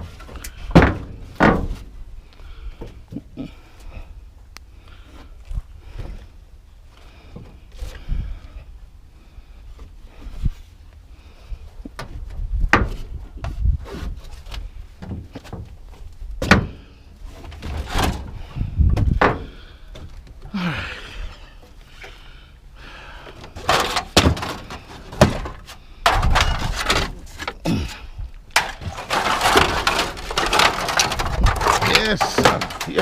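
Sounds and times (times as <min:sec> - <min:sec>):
scrap metal bangs and thuds: 0:00.0 - 0:02.0, 0:16.4 - 0:19.6, 0:23.4 - 0:27.6, 0:28.5 - 0:33.0
scrap scraping slide: 0:28.6 - 0:33.0.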